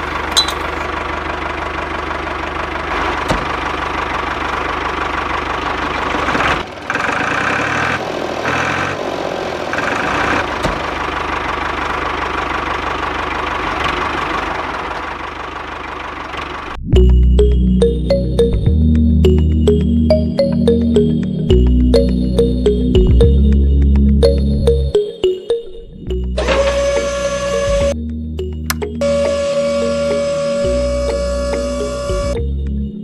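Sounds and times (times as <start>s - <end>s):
music: 16.8s - 33.0s.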